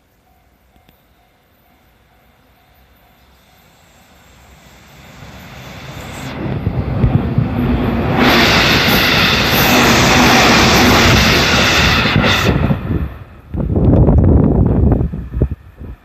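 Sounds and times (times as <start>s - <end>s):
faint crossing warning bell: 0.0s - 6.0s
train rumble: 0.0s - 16.0s.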